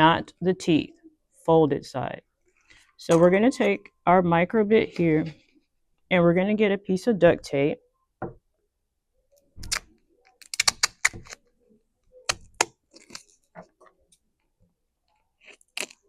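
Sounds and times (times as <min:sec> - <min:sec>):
duct tape pulled off roll: 0:09.6 - 0:11.4.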